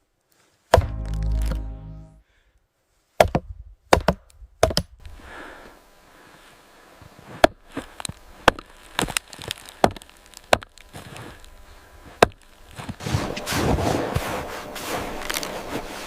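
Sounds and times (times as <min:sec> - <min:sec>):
dense crackling rustle: 0:06.0 - 0:16.0.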